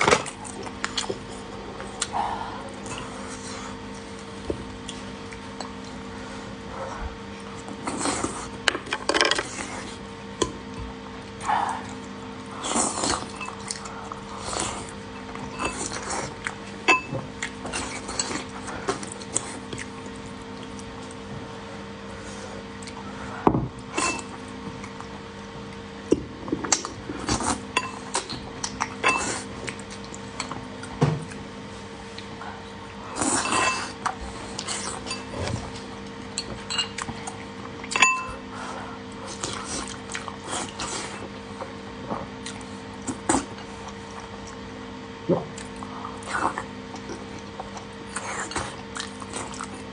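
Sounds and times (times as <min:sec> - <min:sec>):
steady low hum: 0:00.0 - 0:49.9
utensils clinking against dishes: 0:15.5 - 0:16.2, 0:16.9 - 0:18.4, 0:24.0 - 0:24.4, 0:27.3 - 0:28.3, 0:29.0 - 0:29.5, 0:33.2 - 0:34.0, 0:34.6 - 0:35.3, 0:36.4 - 0:37.1, 0:37.9 - 0:38.4.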